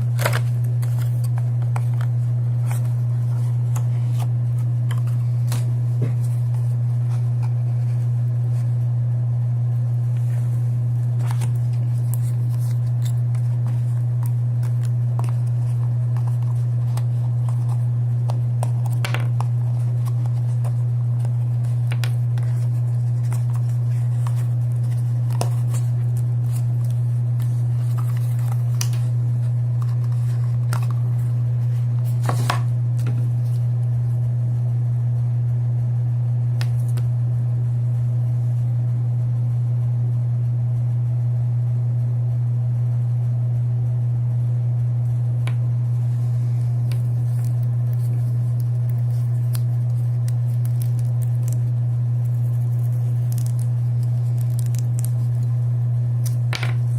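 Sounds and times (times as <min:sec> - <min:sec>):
packaging being handled: 0:00.0 - 0:08.0, 0:11.1 - 0:33.6, 0:46.8 - 0:55.5
loud low hum: 0:00.0 - 0:56.9.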